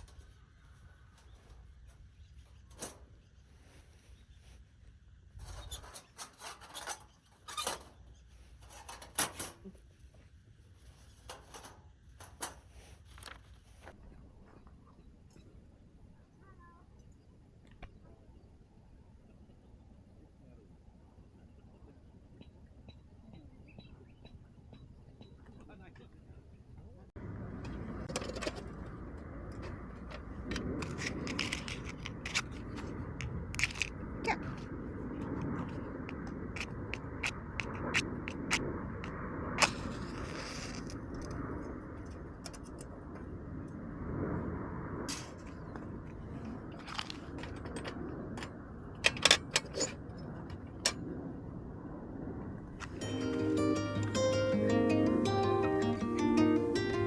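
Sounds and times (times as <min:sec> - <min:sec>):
low rush of flames: 0:27.2 - 0:49.0, 0:50.0 - 0:53.0.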